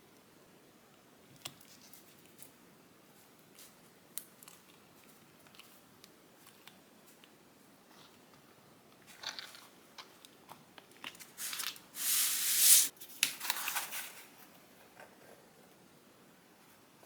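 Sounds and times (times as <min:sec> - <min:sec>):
loud hissing rush: 0:12.0 - 0:12.9.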